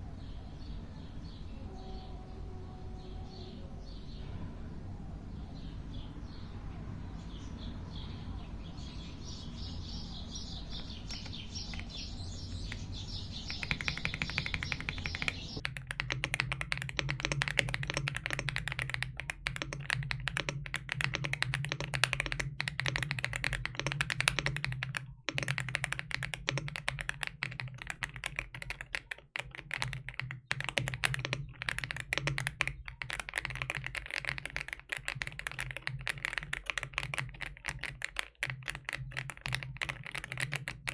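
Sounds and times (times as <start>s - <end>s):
high chirping: 7.1s - 15.6s
fast mechanical keyboard typing: 10.5s - 40.9s.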